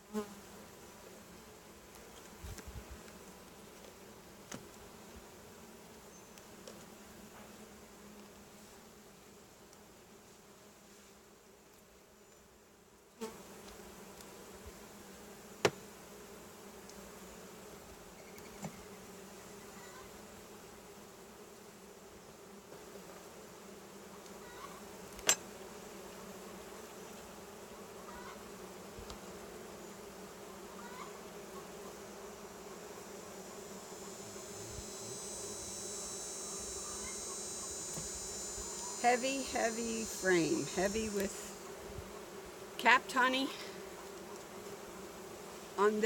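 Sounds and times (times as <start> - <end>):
honeybees buzzing: 0.0 - 46.0
bees humming: 23.0 - 46.0
high insect trill: 33.8 - 41.6.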